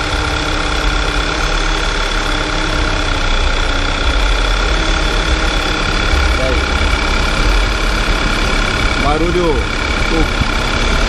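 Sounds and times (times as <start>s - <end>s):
car engine running: 0.0s - 11.0s
knocking wavering engine noise: 0.0s - 11.0s.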